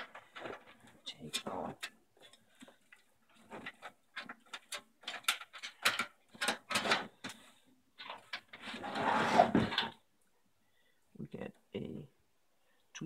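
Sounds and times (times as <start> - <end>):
cables and plastic connectors clicking: 0.0 - 8.6
cables dragged with scraping rustle: 6.4 - 10.0.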